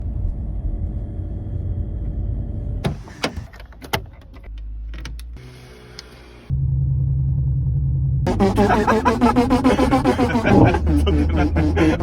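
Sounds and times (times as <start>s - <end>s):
steady low hum: 0.0s - 2.8s, 6.5s - 12.0s
low car rumble: 0.0s - 5.4s, 6.5s - 12.0s.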